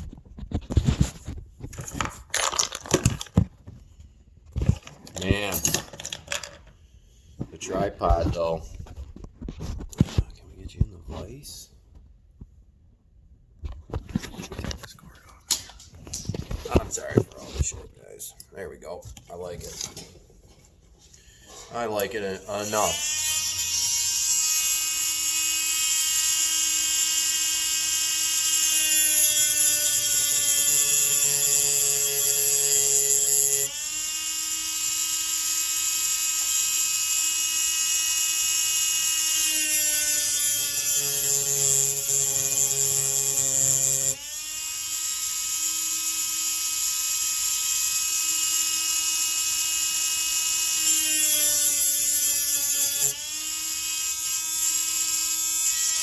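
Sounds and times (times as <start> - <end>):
rotary tool whining: 21.0 - 56.0
rotary tool bit grinding metal: 21.1 - 56.0.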